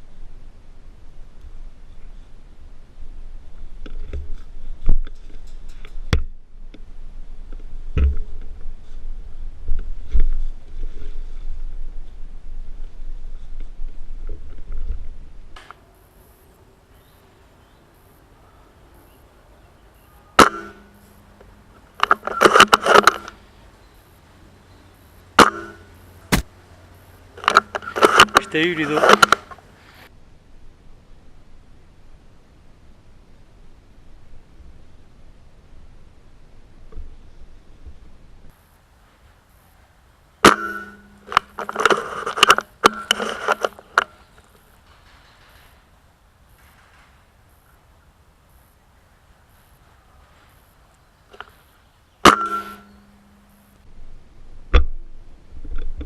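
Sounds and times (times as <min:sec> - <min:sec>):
airsoft rifle shot: 0:20.4 - 0:21.0, 0:25.4 - 0:26.5
airsoft rifle clack with metallic ring: 0:20.4 - 0:21.2, 0:25.4 - 0:26.0, 0:40.4 - 0:44.2, 0:52.2 - 0:53.6
dull thump: 0:25.4 - 0:26.5.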